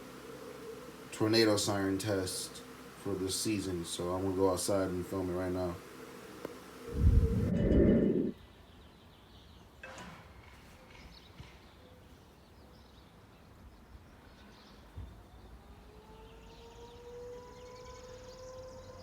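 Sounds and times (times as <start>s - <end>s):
distant warning siren: 6.9s - 8.4s, 15.1s - 19.0s.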